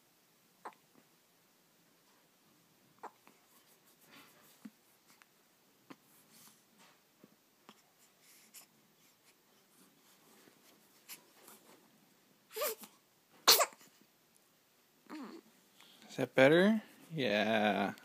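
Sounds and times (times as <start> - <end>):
baby sneezing: 12.5 - 13.9.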